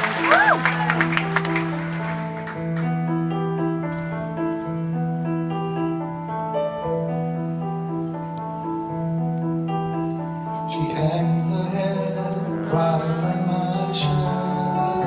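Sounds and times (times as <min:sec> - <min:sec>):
solo piano playing: 0:00.0 - 0:15.0.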